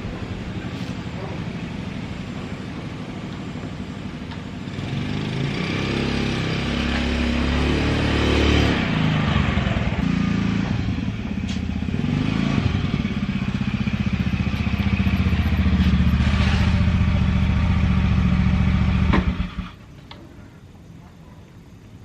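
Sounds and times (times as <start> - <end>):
motor scooter engine running: 0.1 - 16.2.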